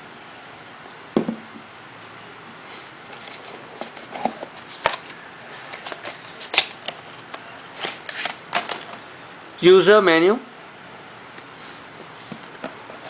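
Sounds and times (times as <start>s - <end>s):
light rustling of packaging: 3.0s - 9.1s.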